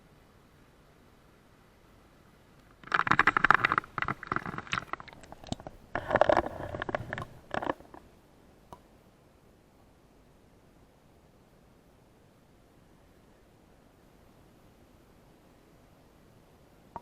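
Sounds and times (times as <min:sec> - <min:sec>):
crunching and scraping: 0:02.8 - 0:08.0
rapid clicks: 0:02.8 - 0:08.0.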